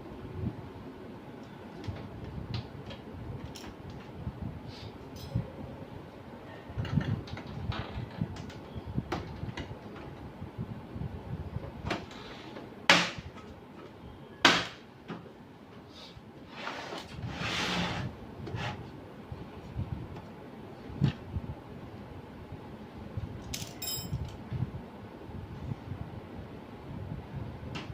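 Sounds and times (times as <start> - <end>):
plastic sliding scrape: 16.5 - 18.8.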